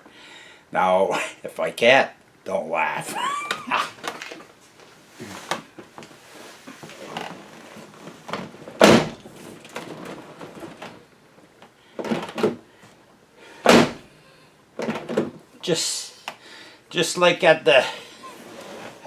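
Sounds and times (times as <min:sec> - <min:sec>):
rustling of person moving: 0:03.2 - 0:15.6, 0:18.0 - 0:19.0
car door thud: 0:08.8 - 0:09.2, 0:13.6 - 0:14.0.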